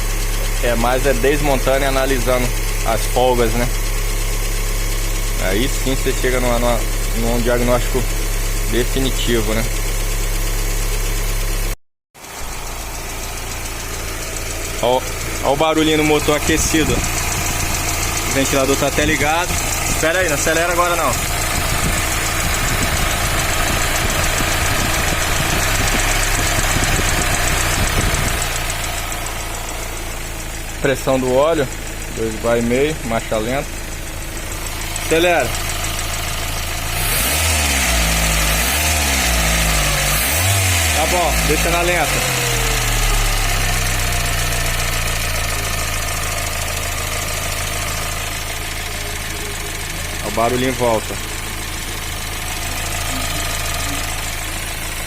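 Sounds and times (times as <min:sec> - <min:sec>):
car engine idling: 0:00.0 - 0:55.0
fast even engine ticking: 0:00.0 - 0:55.0
faint engine tick: 0:12.3 - 0:37.4
radiator fan running: 0:16.4 - 0:30.1.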